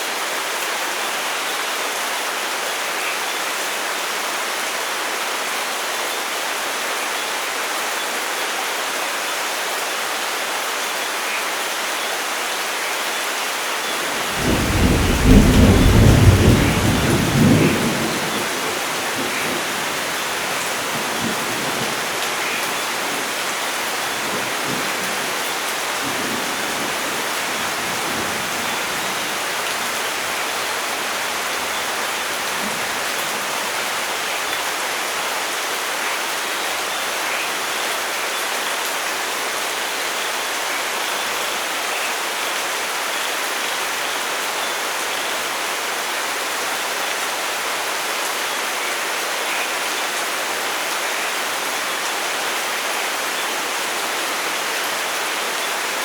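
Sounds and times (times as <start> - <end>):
heavy rain falling: 0.0 - 56.0
thunder rumble: 14.1 - 22.2.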